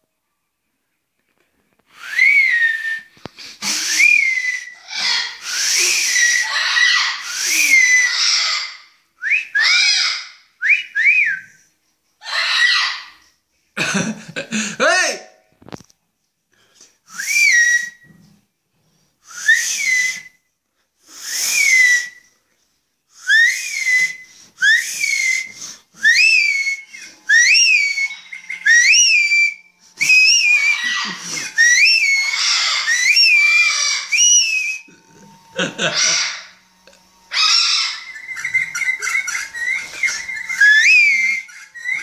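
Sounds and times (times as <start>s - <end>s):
shrill whistle-like bird calls: 2.0s - 11.6s, 17.1s - 18.2s, 19.3s - 20.5s, 21.2s - 22.4s, 23.2s - 34.9s, 37.3s - 42.0s.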